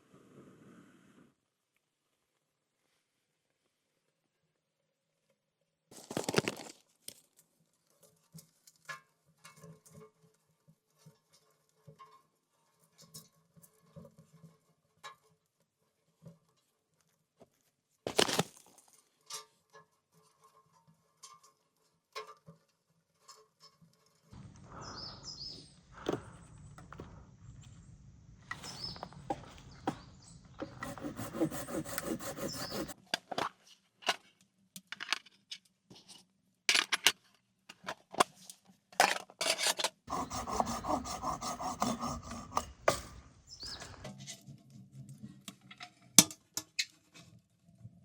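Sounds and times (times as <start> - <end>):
handsaw cutting wood: 30.6 - 33.0, 40.1 - 44.0.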